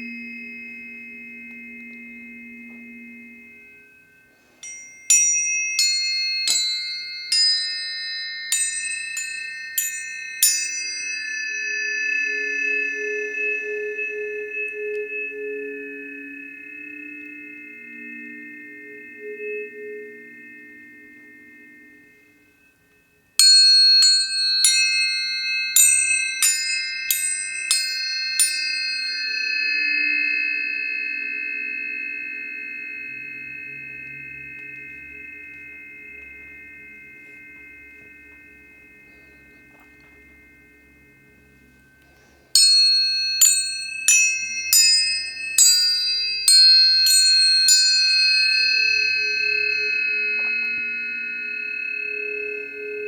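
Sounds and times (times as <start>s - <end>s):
tuning forks ringing: 0.0s - 53.0s.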